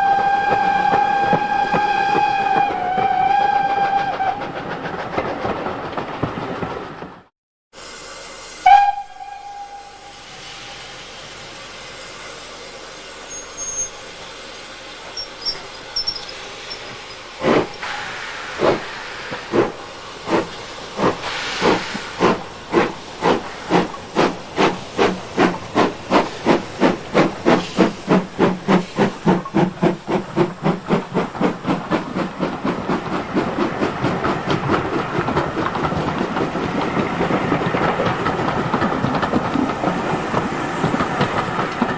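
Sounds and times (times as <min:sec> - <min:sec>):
steam locomotive whistle: 0:00.0 - 0:04.5, 0:08.5 - 0:11.2, 0:13.0 - 0:14.2
steam locomotive chuffing: 0:00.0 - 0:41.9
steam hissing: 0:07.8 - 0:41.9.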